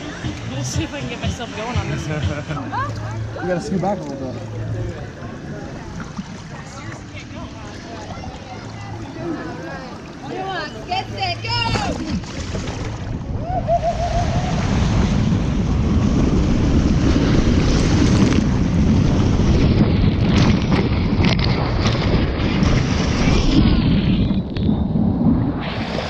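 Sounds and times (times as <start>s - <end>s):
rushing water: 0.0s - 24.4s
wind buffeting microphone: 11.4s - 26.0s.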